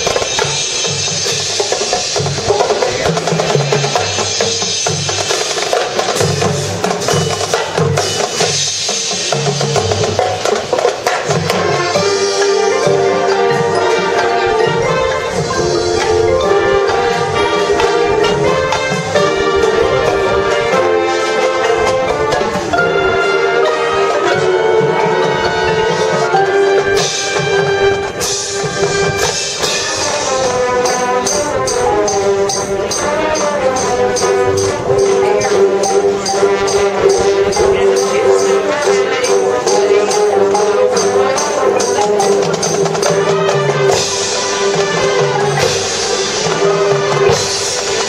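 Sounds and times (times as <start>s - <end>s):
drums and mallet percussion: 0.0s - 48.0s
brass and woodwind chords: 11.1s - 48.0s.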